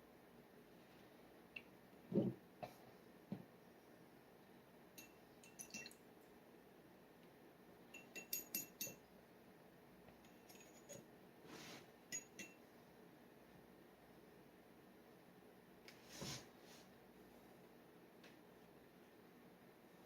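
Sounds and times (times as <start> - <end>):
pen nib clinking on glass bottle: 8.0 - 9.0, 12.1 - 12.6.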